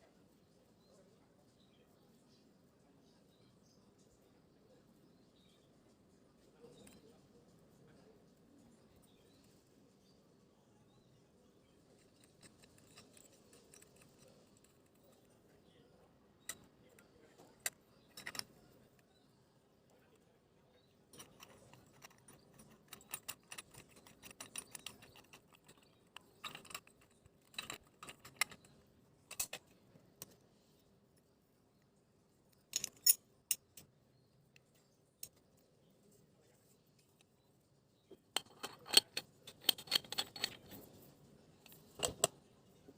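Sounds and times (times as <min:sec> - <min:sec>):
metal moka pot parts clinking: 0:17.6 - 0:18.6, 0:21.2 - 0:28.7, 0:29.3 - 0:29.6, 0:32.7 - 0:33.7, 0:38.4 - 0:40.8, 0:41.6 - 0:42.4.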